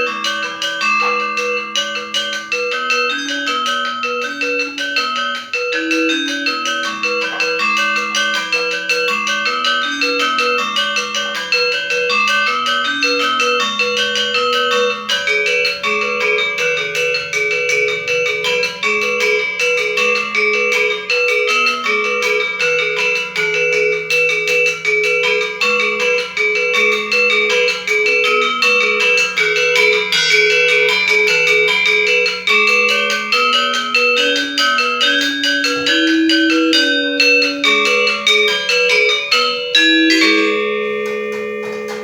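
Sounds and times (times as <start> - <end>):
metallophone mallet strikes: 0.0 - 2.2, 28.8 - 42.0
low metallophone melody: 0.0 - 42.0.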